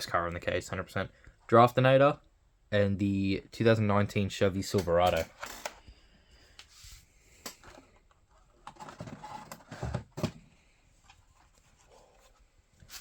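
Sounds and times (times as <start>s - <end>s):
plastic and cardboard rustling: 6.7s - 13.0s.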